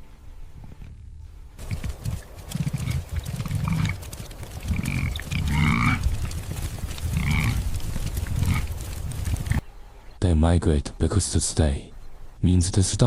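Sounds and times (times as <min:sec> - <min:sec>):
wildebeest grunting: 0:01.6 - 0:04.0, 0:04.6 - 0:06.2, 0:07.1 - 0:09.6.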